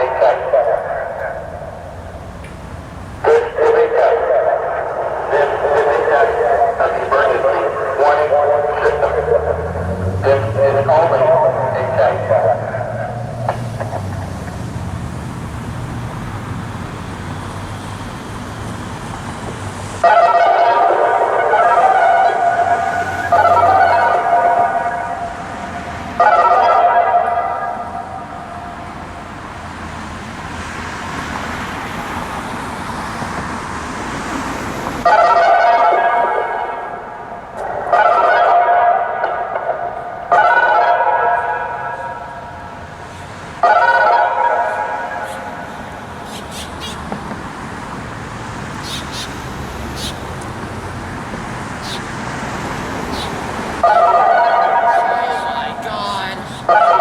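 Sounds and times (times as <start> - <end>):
low traffic rumble: 0.0 - 57.0
buzzy distorted siren tone: 43.6 - 46.3, 53.0 - 57.0.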